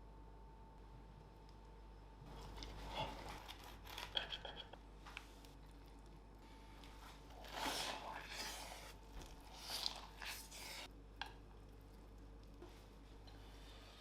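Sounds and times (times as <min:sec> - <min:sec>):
crunching of crusty sandwich: 0:02.3 - 0:04.2.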